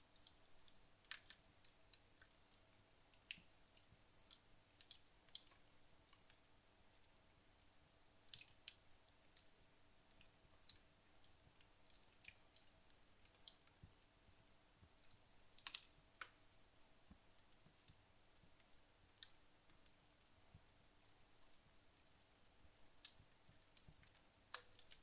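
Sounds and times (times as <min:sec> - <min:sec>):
faint fire hiss: 0:00.0 - 0:25.0
wood fire crackling and popping: 0:00.2 - 0:01.6, 0:10.2 - 0:16.4, 0:17.0 - 0:20.6, 0:23.0 - 0:25.0.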